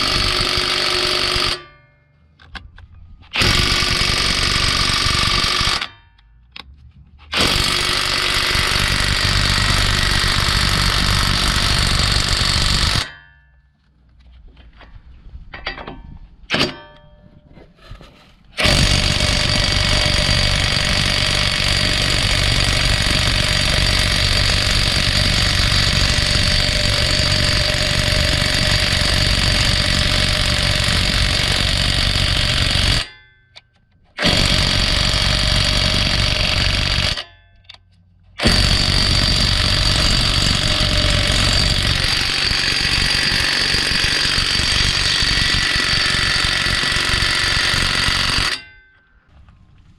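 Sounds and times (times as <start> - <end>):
impact wrench hammering: 3.3 - 5.9, 7.3 - 13.3, 18.6 - 48.8.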